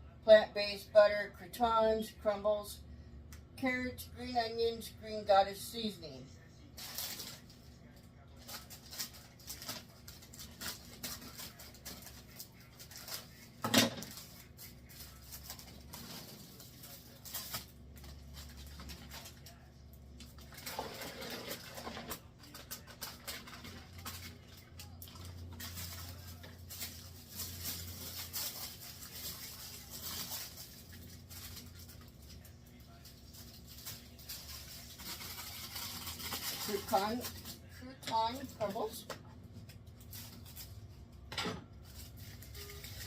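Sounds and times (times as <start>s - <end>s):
plastic bag crinkling: 6.8s - 19.6s, 20.3s - 39.0s, 41.8s - 43.0s.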